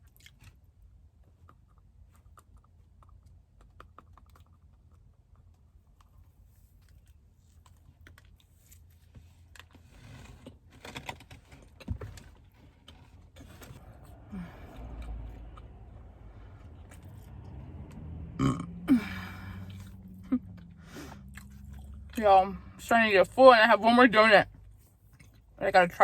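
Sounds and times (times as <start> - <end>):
loud burp: 18.4 - 19.7.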